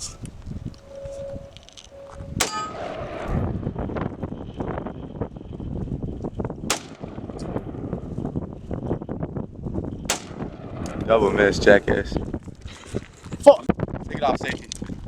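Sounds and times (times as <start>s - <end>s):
wind rumbling on microphone: 0.0s - 15.0s
steel target plate clanging: 0.8s - 3.8s
rifle shots: 2.4s - 3.6s, 6.7s - 8.3s, 10.1s - 12.0s.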